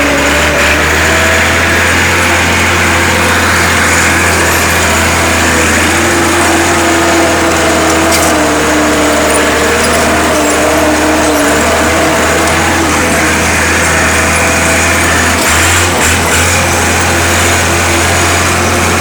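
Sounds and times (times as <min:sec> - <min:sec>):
tractor diesel engine labouring: 0:00.0 - 0:19.0.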